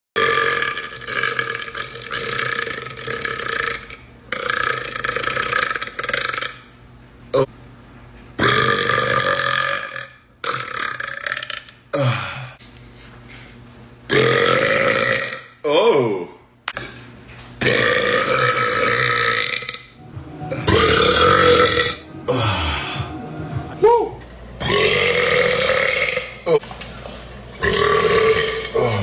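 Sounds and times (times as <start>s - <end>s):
man belching: 0.2s - 6.6s, 14.1s - 16.3s, 17.6s - 19.9s, 20.5s - 23.0s, 24.6s - 26.6s, 27.6s - 29.0s.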